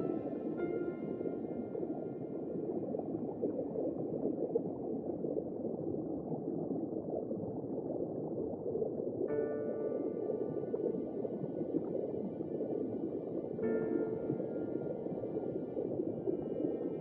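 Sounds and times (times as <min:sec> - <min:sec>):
background music: 0:00.0 - 0:02.6
underwater bubbling and rushing: 0:00.0 - 0:17.0.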